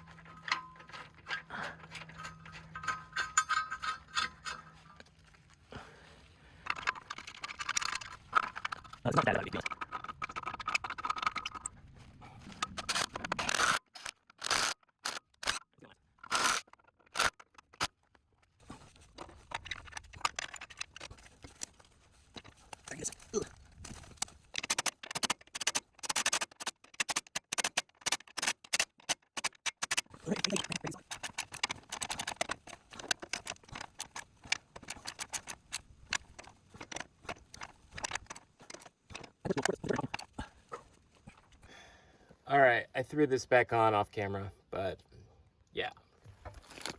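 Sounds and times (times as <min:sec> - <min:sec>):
metal scrape: 0:00.0 - 0:05.1
hand tools clicking and tapping: 0:00.0 - 0:05.6, 0:06.6 - 0:11.7, 0:19.1 - 0:41.5.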